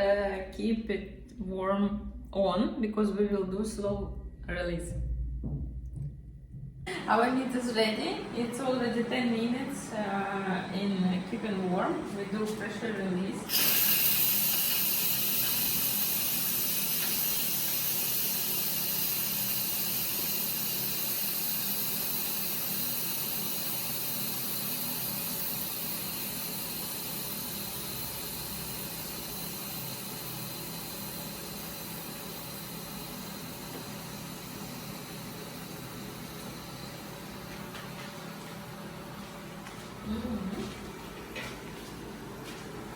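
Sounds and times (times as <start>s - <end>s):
steam hissing from valve: 12.2s - 37.1s.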